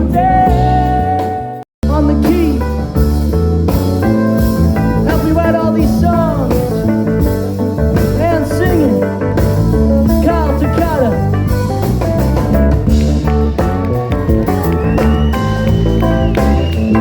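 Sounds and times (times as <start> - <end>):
steady bass line: 0.0 - 17.0
bending guitar notes: 11.1 - 17.0.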